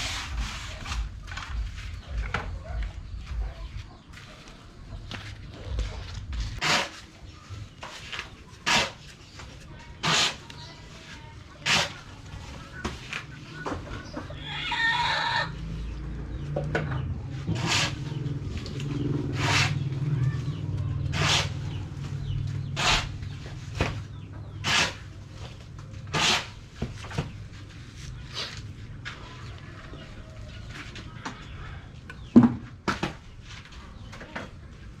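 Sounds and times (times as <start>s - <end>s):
sharp scraping strikes: 6.5s - 7.1s
rooster crowing: 14.4s - 15.6s.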